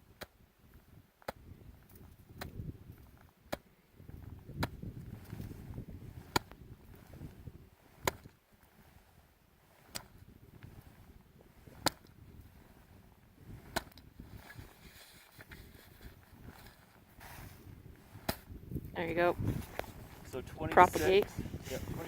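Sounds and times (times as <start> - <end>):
hand tapping shovel blade: 9.7 - 18.5.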